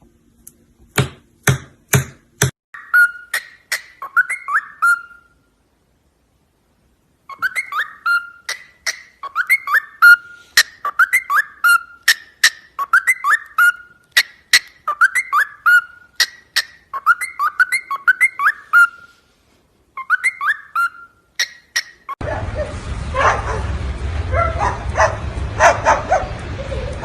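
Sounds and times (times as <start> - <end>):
bird whistling: 2.8 - 5.4, 7.3 - 19.2, 20.0 - 22.2.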